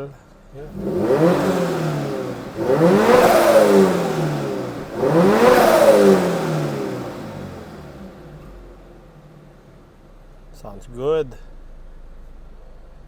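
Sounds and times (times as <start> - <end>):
car engine revving: 0.6 - 8.8.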